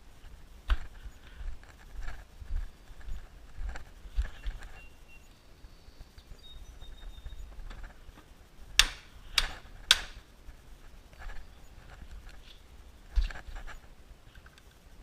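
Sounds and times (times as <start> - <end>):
sharp clicks or knocks: 8.8 - 10.2.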